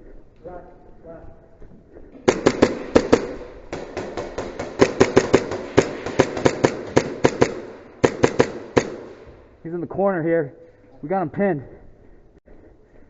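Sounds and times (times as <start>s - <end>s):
airsoft gun shots: 2.2s - 9.5s.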